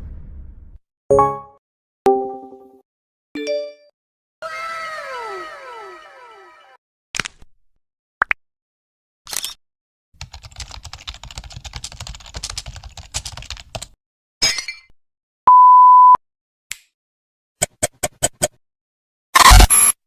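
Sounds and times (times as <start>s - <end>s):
rapid keyboard typing clicks: 10.2s - 14.0s
censor bleep: 15.5s - 16.2s.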